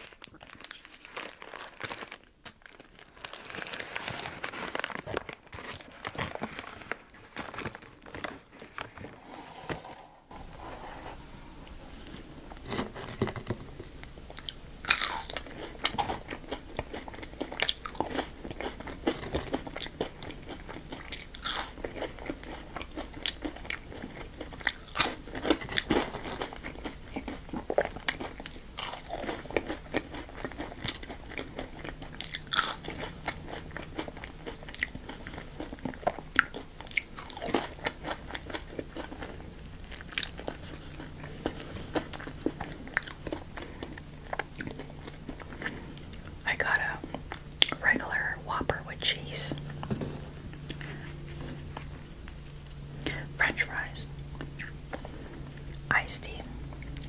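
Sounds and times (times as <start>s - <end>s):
crunching bites and chewing: 12.0s - 47.8s, 49.7s - 53.2s.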